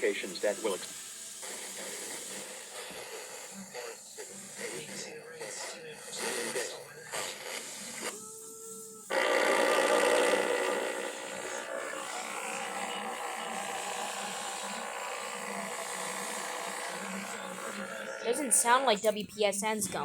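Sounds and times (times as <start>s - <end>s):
radio static hiss: 0.0s - 20.0s
faint buzzing hum: 8.1s - 20.0s.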